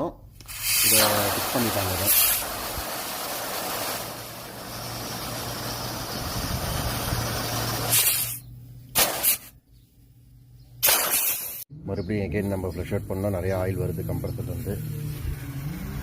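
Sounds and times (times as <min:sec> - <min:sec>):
gas hissing from pipework: 0:00.4 - 0:08.4
short gas blasts: 0:00.4 - 0:09.6, 0:10.8 - 0:11.6.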